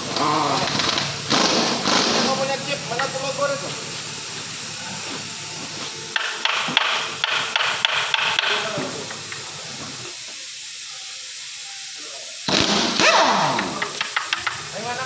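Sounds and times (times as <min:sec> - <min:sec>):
steady hiss: 0:00.0 - 0:15.0
sudden loud burst of noise: 0:00.1 - 0:03.7, 0:12.4 - 0:14.1.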